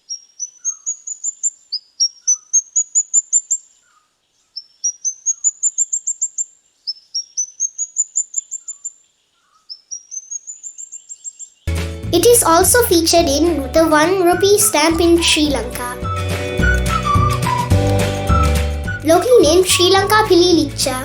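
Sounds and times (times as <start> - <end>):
bird calling high-pitched notes: 12.2 - 21.0.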